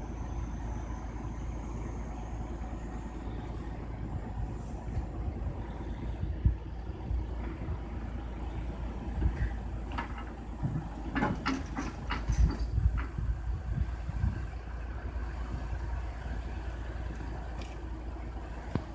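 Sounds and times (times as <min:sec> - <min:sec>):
truck engine running: 0:00.0 - 0:18.9
sharp knocks and metal clatters: 0:09.3 - 0:13.3.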